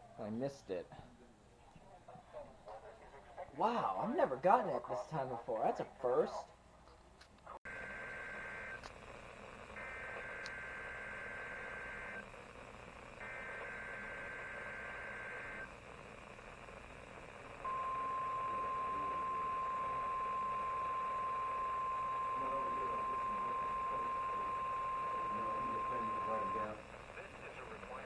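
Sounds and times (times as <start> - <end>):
screechy digital data bursts: 7.7 - 28.0.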